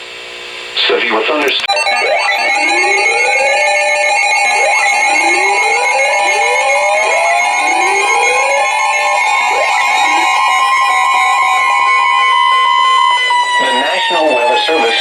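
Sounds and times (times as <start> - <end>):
two-note alert tone: 1.7 - 12.9.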